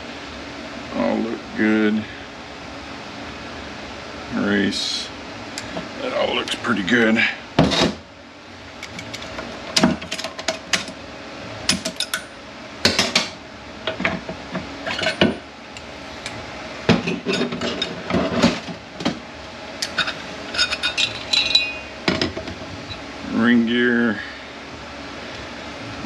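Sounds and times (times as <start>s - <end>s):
metal gear parts clinking: 19.8s - 21.9s.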